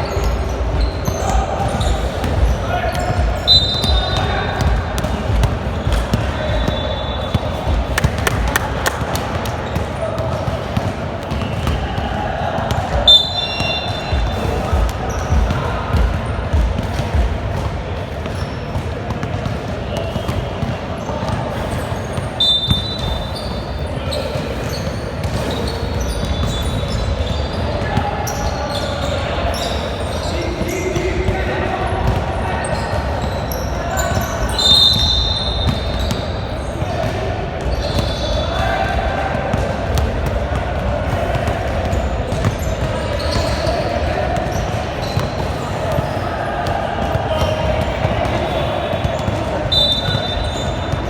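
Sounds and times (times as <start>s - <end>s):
sneakers squeaking: 0.0s - 17.1s, 18.0s - 31.4s, 32.0s - 38.9s, 41.1s - 51.0s
voices in background: 0.0s - 51.0s
basketball bouncing on court: 0.2s - 23.6s, 30.6s - 34.2s, 34.9s - 51.0s
shoe squeaks: 3.0s - 4.3s, 21.6s - 30.5s, 32.7s - 36.8s, 37.7s - 38.4s, 42.3s - 46.2s, 48.5s - 51.0s
basketball dribbling: 7.7s - 9.8s.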